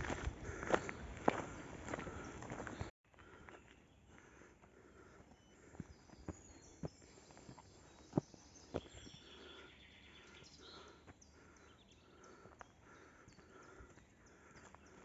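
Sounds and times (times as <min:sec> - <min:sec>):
footsteps on forest trail: 0:00.0 - 0:15.0
bird chirping: 0:04.9 - 0:15.0.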